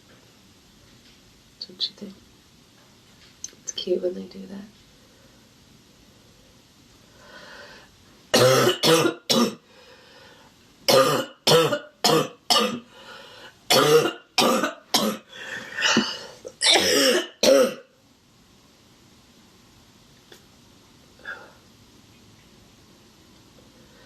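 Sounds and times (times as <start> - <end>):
woman breathing in: 7.1 - 7.9, 9.6 - 10.6, 12.9 - 13.6, 15.3 - 16.5
woman coughing harshly: 8.4 - 9.6, 10.9 - 12.9, 13.7 - 17.9.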